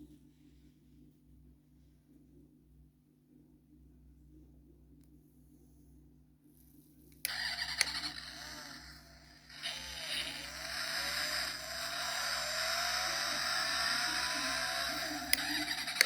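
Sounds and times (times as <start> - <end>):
click: 7.1 - 8.8, 9.6 - 16.0.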